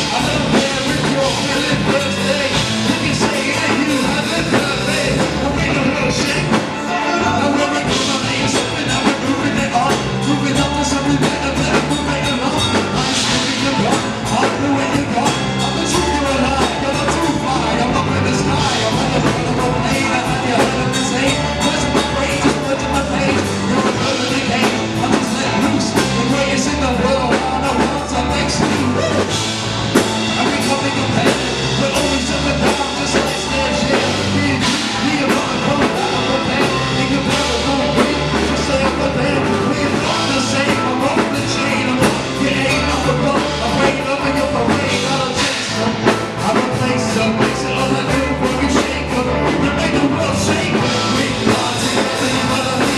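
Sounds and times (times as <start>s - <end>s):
drum kit beat: 0.0s - 52.9s
rock band music: 0.0s - 52.9s.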